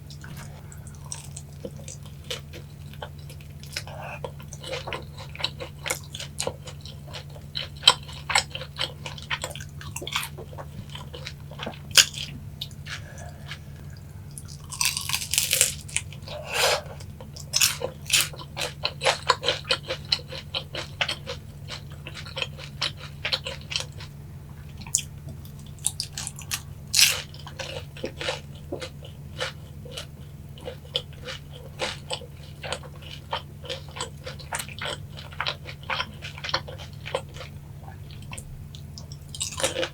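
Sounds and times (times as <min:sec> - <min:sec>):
low hum: 0:00.0 - 0:04.5, 0:09.6 - 0:18.6
crunching and chewing fried chicken: 0:00.0 - 0:39.9.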